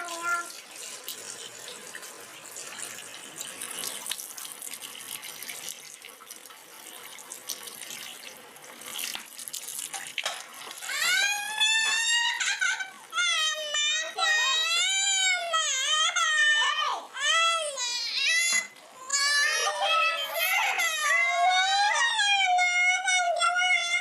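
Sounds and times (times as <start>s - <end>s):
tap water running into sink: 0.0s - 12.8s
child wailing: 10.8s - 24.0s.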